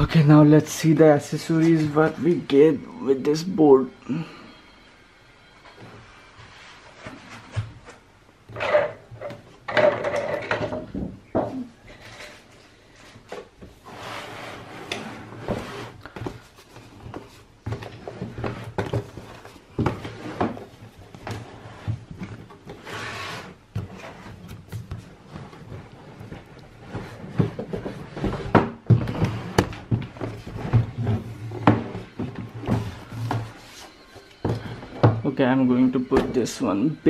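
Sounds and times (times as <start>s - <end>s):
cardboard boxes scraping and thumping: 13.2s - 35.2s.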